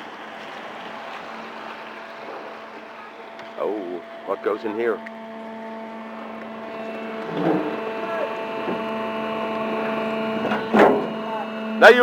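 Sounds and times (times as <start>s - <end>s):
steady mechanical hum: 0.0s - 12.0s
faint voices: 11.1s - 12.0s.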